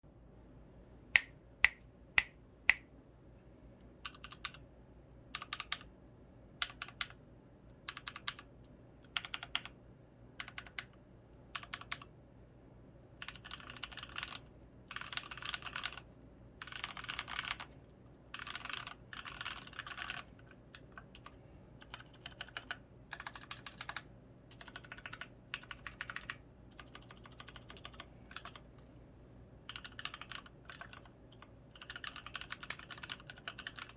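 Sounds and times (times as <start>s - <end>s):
mechanical keyboard typing: 4.0s - 4.6s, 5.3s - 5.9s, 6.6s - 7.2s, 7.8s - 9.8s, 10.4s - 11.0s, 11.6s - 12.1s, 13.2s - 17.7s, 18.3s - 28.7s, 29.6s - 33.9s.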